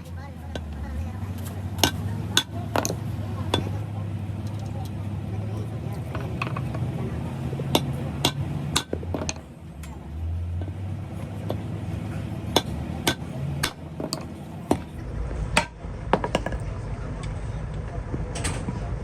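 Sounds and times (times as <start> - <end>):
low hum: 0.0 - 19.0
metal tools clinking: 1.4 - 3.8.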